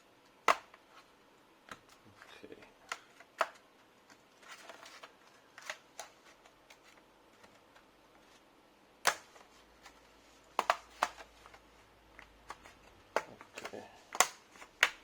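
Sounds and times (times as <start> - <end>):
plastic clicks and snaps: 12.2 - 15.0.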